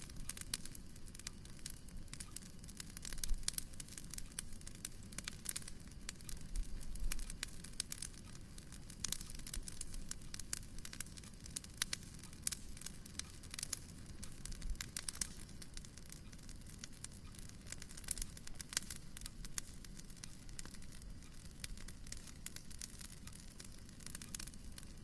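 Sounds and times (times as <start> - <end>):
wood fire crackling: 0.0 - 25.0.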